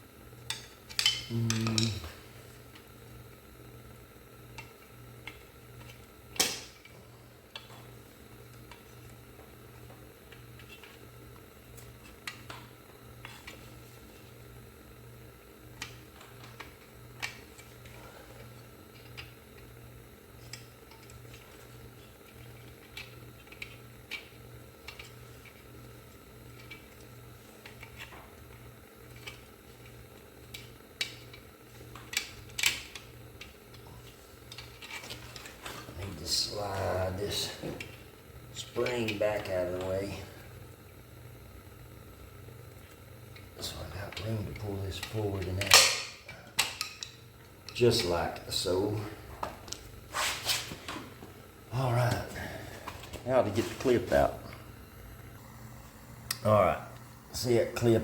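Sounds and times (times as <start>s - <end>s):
low pulsing hum: 54.4s - 57.8s.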